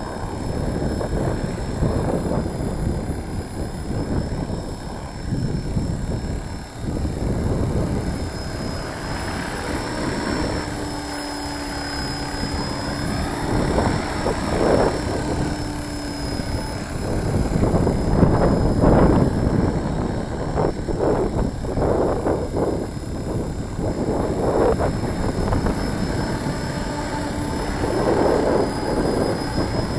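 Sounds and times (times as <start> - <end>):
rc helicopter hovering: 0.0 - 29.9
wind buffeting microphone: 0.0 - 29.9.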